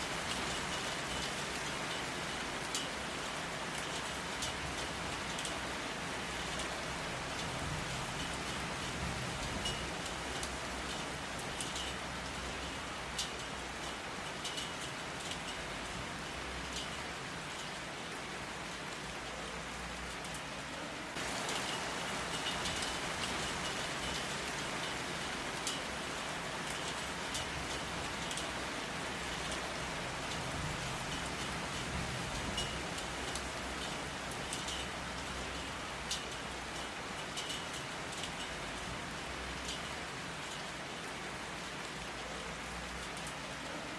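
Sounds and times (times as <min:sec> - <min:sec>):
steady rain falling: 0:00.0 - 0:43.9.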